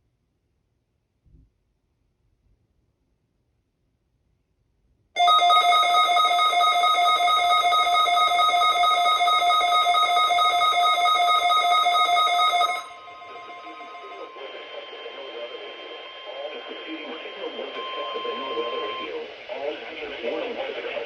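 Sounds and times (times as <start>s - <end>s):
electronic alert tone: 5.2s - 19.0s.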